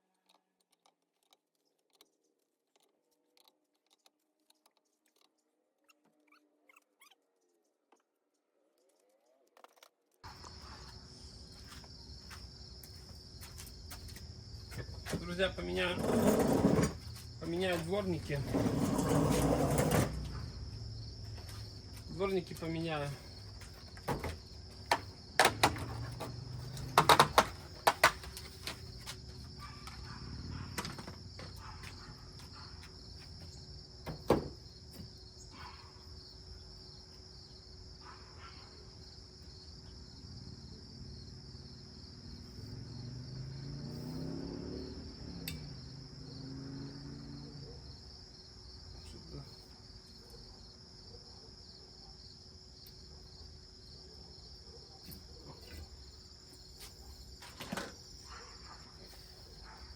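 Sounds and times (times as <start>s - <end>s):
crickets chirping: 10.2s - 59.9s.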